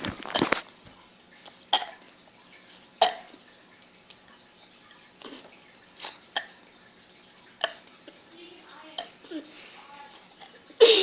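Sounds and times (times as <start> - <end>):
girl burping: 10.8 - 11.0.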